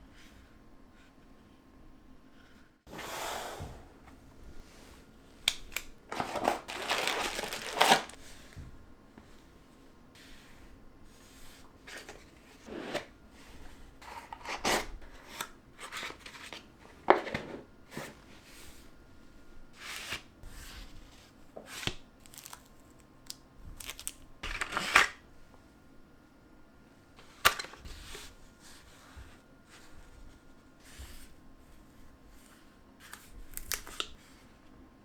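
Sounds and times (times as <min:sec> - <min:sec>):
cardboard and plastic packaging rustling: 0:05.4 - 0:08.7, 0:21.6 - 0:25.2.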